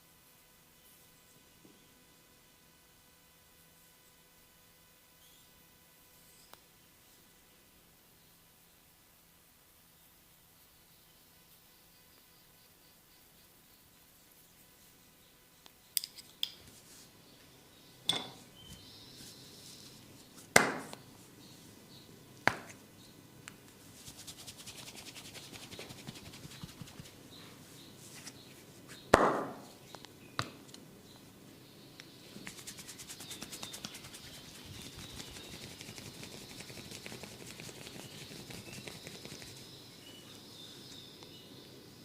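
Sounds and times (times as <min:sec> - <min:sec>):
hands smacking during massage: 0:20.5 - 0:21.0, 0:22.5 - 0:22.8, 0:24.1 - 0:27.2.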